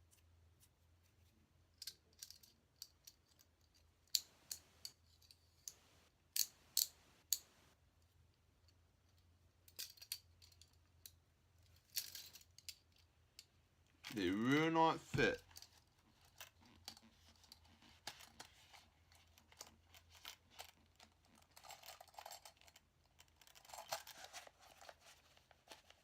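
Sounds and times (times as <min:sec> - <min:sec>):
handcuffs clicking and clinking: 0:01.8 - 0:07.5, 0:09.7 - 0:10.8, 0:11.7 - 0:13.0, 0:21.5 - 0:22.8.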